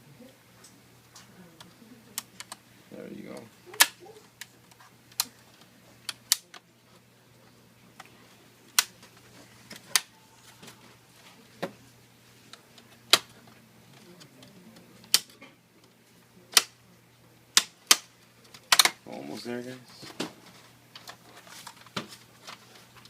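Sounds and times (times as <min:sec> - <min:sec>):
plastic clips popping loose: 0:03.7 - 0:04.0, 0:15.1 - 0:15.4, 0:17.6 - 0:19.0.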